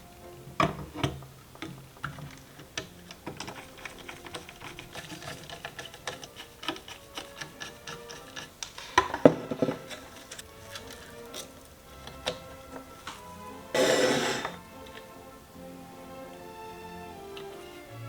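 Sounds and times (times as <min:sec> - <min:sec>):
computer parts clicking and tapping: 0:00.6 - 0:13.2.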